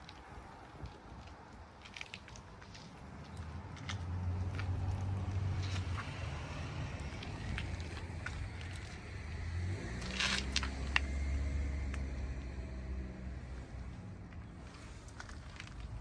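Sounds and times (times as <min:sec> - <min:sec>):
engine ticks and clicks: 0:06.9 - 0:12.7.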